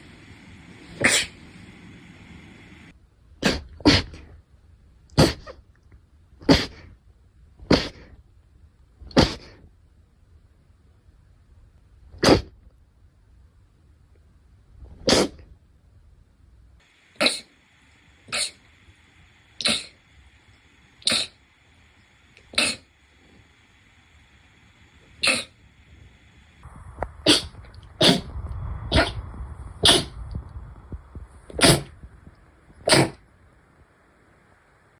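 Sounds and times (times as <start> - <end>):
person sneezing: 1.0 - 1.4, 3.4 - 4.3, 5.2 - 5.6, 6.4 - 6.9, 7.6 - 8.1, 9.1 - 9.6, 12.2 - 12.5, 15.0 - 15.4, 17.2 - 17.5, 18.3 - 18.6, 19.6 - 20.0, 21.0 - 21.4, 22.5 - 22.9, 25.2 - 25.6, 27.2 - 28.3, 28.9 - 29.2, 29.8 - 30.2, 31.5 - 31.9, 32.8 - 33.2.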